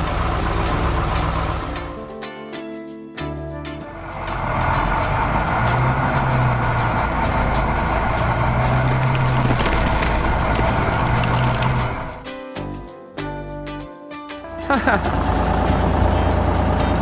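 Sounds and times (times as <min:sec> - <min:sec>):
construction vehicle engines: 0:00.0 - 0:02.0, 0:04.0 - 0:12.2, 0:15.1 - 0:17.0.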